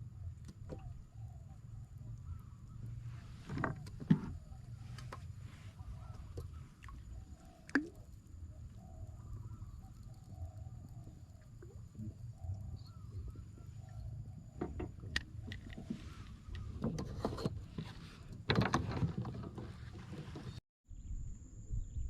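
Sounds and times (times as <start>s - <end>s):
water splashing: 4.8s - 8.1s.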